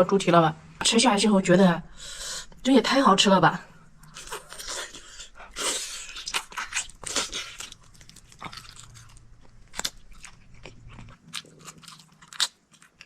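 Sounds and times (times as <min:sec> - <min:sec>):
wet crunchy chewing: 0:04.0 - 0:13.0.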